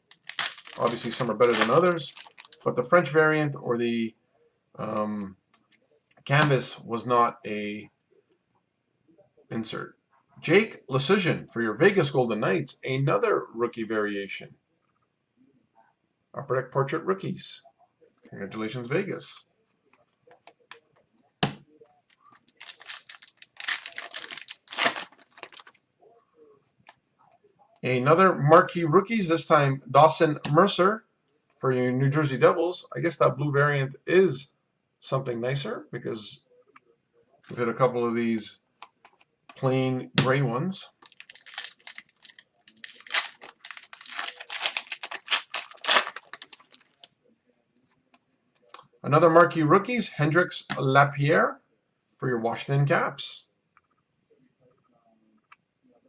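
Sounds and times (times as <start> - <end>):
wrapper tearing and crinkling: 0.0 - 2.7, 22.4 - 25.7, 41.0 - 47.1.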